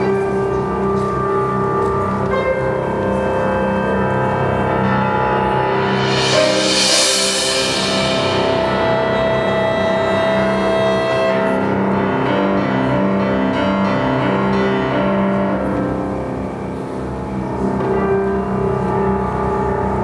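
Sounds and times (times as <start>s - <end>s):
chamber ensemble playing: 0.0s - 20.0s
bright hissing swell: 5.4s - 10.8s.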